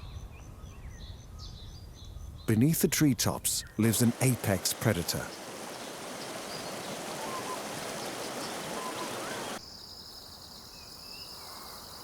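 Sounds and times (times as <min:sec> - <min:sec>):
rushing water: 0:03.8 - 0:09.6
gliding bird call: 0:05.3 - 0:09.6
insect drone: 0:05.3 - 0:12.0.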